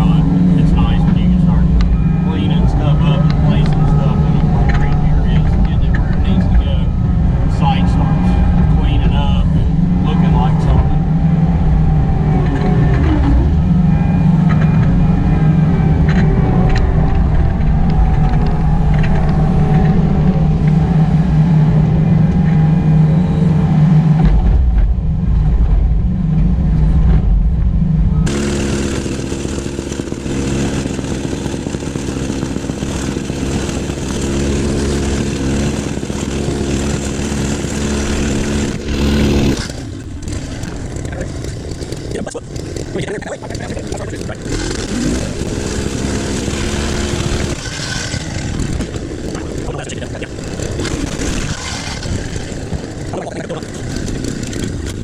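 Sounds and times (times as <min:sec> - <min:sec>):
excavator engine running: 0:00.0 - 0:55.0.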